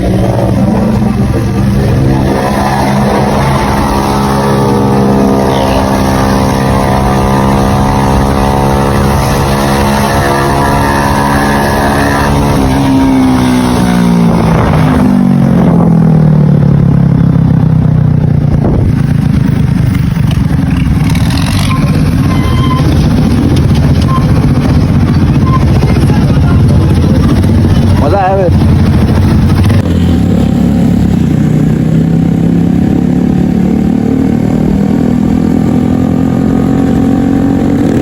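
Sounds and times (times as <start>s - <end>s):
motorcycle engines at high revs: 0.0s - 38.0s
wind noise: 18.2s - 30.1s.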